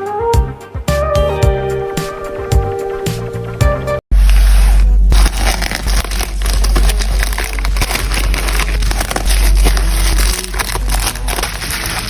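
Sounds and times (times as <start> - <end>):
packaging crinkling and crackling: 4.2 - 12.0.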